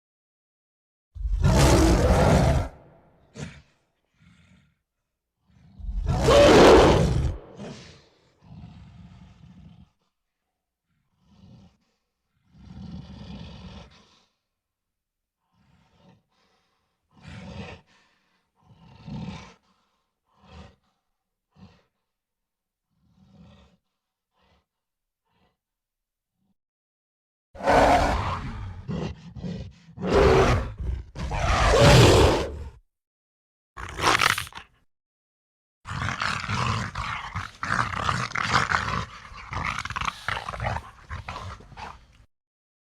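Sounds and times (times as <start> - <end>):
gorilla growling: 1.2 - 4.7, 5.6 - 10.0, 33.8 - 34.8, 35.9 - 42.3
gorilla grunting and huffing: 33.8 - 34.8, 35.9 - 42.2.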